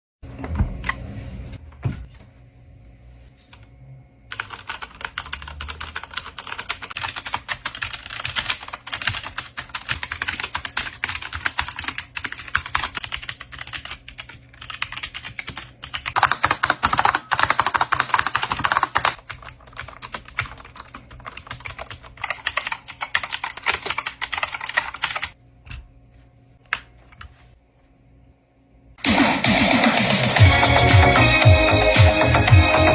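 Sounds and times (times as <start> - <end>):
fast typing on keyboards: 4.3 - 25.4.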